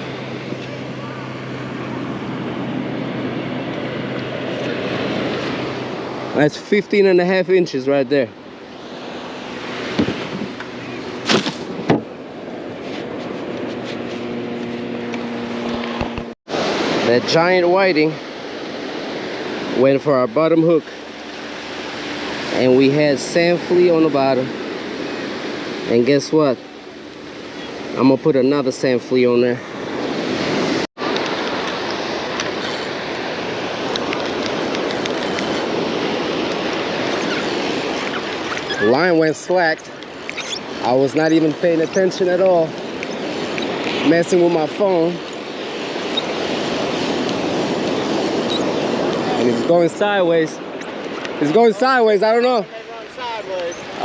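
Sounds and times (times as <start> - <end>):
surf: 0.0 - 54.0.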